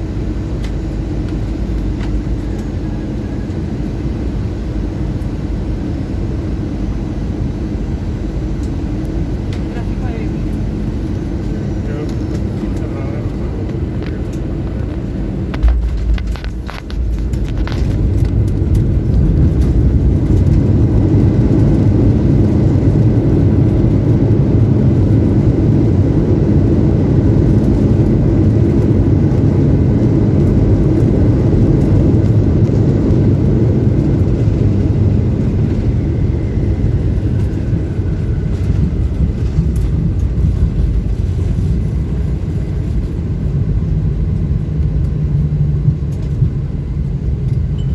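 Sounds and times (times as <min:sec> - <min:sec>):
jet engines reverse thrust rumble: 0:00.0 - 0:47.9
wheels rolling on runway: 0:09.5 - 0:46.6
airplane touchdown jolt and rattle: 0:10.5 - 0:26.2, 0:27.1 - 0:45.0.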